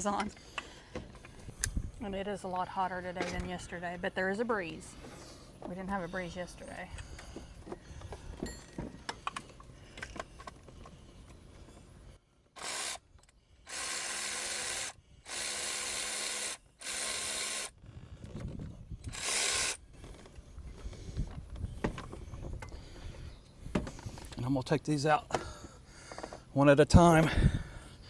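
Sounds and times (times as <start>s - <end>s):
electric ratchet spinning bolts: 12.6s - 13.1s, 13.7s - 17.8s, 19.0s - 20.1s.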